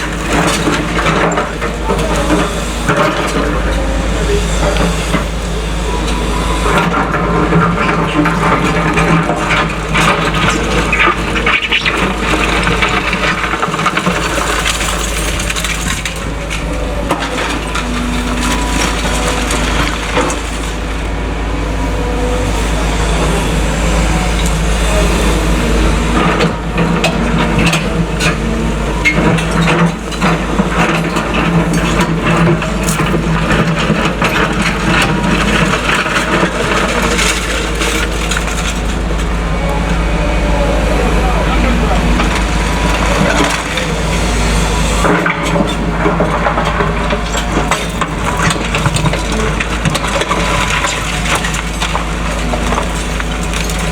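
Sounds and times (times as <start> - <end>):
excavator diesel engines running: 0.0 - 53.9
rubble clattering and cracking: 6.7 - 21.1, 26.1 - 39.5, 42.0 - 53.9.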